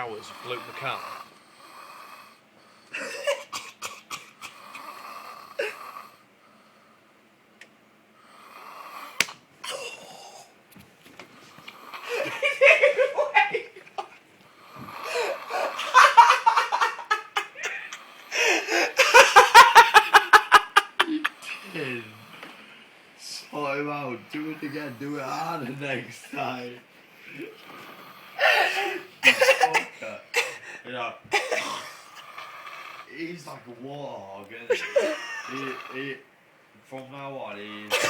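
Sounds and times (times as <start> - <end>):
man snoring loudly: 0.0 - 3.0, 4.5 - 6.2, 8.3 - 9.2, 14.6 - 16.8, 34.9 - 36.2
people laughing: 12.1 - 14.2, 15.5 - 21.3, 34.7 - 35.7.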